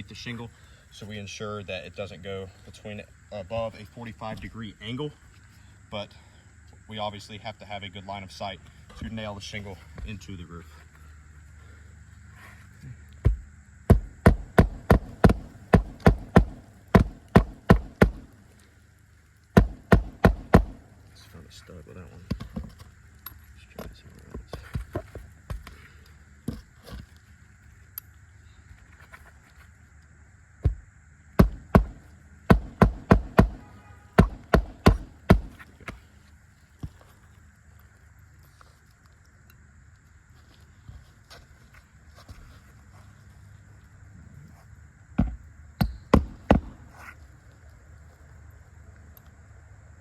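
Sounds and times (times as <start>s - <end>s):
hammer striking roofing nails: 13.2s - 18.3s, 19.6s - 20.8s, 31.4s - 36.0s, 45.2s - 46.8s.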